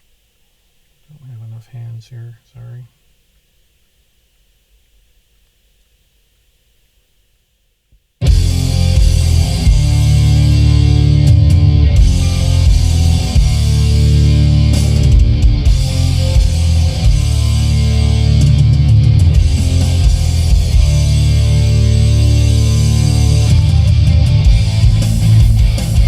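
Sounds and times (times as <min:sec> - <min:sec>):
rock music through car stereo: 0:08.2 - 0:26.0.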